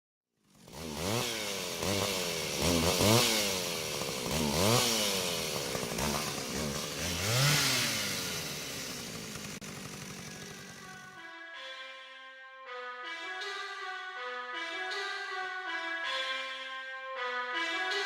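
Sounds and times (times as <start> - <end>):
chainsaw revving: 0.4 - 11.3.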